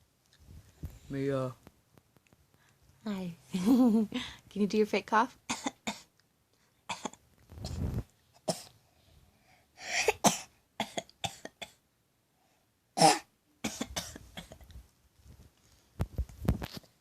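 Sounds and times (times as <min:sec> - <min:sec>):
child fake coughing: 0:05.5 - 0:06.1, 0:09.8 - 0:11.8, 0:13.0 - 0:14.6.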